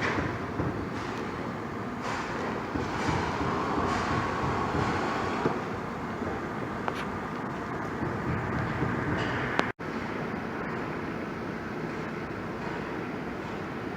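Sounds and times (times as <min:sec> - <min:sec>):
road traffic passing: 0:02.9 - 0:09.8.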